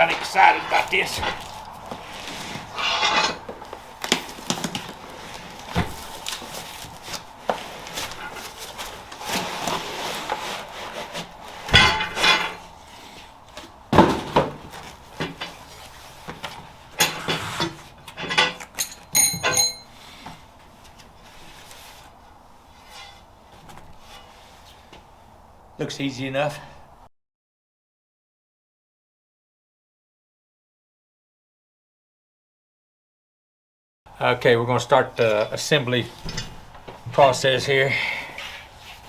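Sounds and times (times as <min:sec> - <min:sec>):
wrapping rustling: 0:03.6 - 0:11.7
knocks and clatters: 0:18.2 - 0:19.9
ringing metallic clink: 0:18.7 - 0:20.0.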